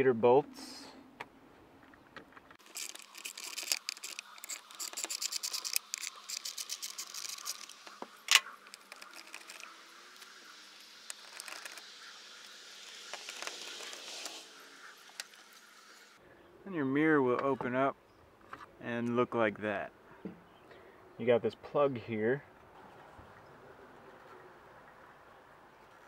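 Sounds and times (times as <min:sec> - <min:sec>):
faint scraping and ticks: 0:01.8 - 0:16.0.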